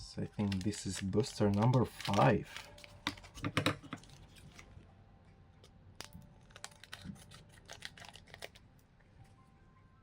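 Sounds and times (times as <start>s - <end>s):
trading cards rustling and clicking: 0.2s - 4.8s, 6.0s - 8.7s.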